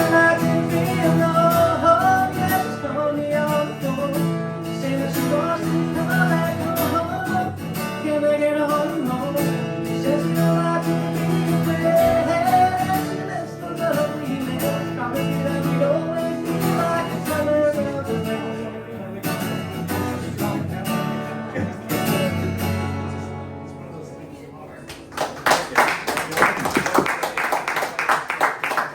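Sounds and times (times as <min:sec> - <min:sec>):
person singing: 0:00.0 - 0:22.8
acoustic guitar strumming: 0:00.0 - 0:24.6.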